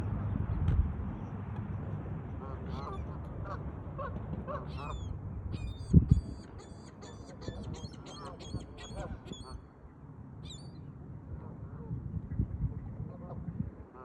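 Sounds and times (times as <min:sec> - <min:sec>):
bird honking calls: 0:02.4 - 0:09.6.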